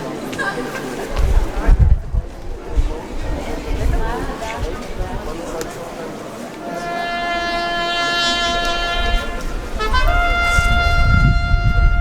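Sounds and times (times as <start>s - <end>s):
wind rumble on microphone: 1.1s - 5.5s, 8.4s - 12.0s
horn long held notes: 6.6s - 12.0s.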